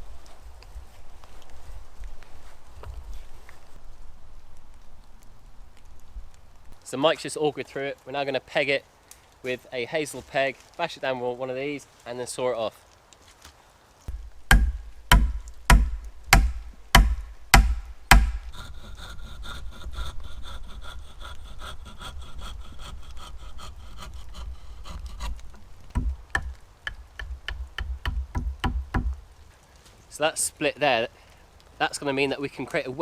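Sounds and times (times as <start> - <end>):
hard wooden knocks: 14.1 - 18.5, 25.9 - 29.2
hand saw cutting wood: 14.4 - 29.1.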